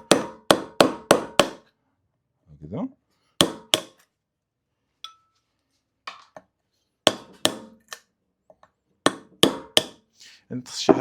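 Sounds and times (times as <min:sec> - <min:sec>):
hammer striking metal tool: 0:00.0 - 0:01.6, 0:03.4 - 0:04.0, 0:09.1 - 0:10.0.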